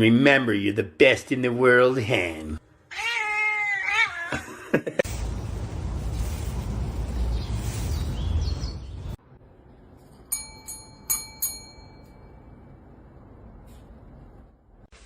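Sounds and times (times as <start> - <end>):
loud rumbling noise: 5.1 - 9.2
small bell ringing: 10.2 - 12.7.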